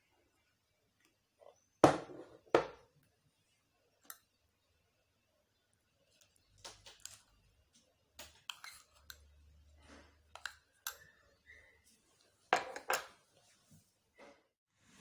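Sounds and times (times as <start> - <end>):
glassware and utensils clinking: 12.6 - 13.2.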